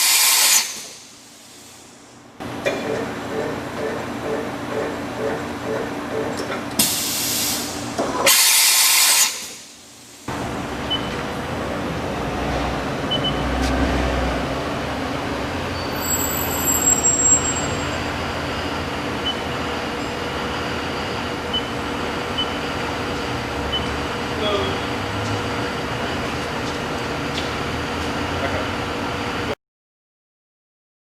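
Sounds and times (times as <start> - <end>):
loud hiss of air spray: 0.0 - 2.2, 6.8 - 10.3
machine running hum: 1.2 - 8.3, 9.7 - 29.6.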